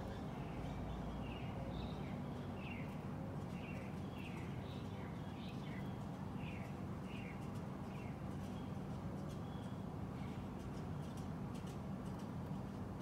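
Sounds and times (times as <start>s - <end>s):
bird chirping: 0.0s - 8.8s.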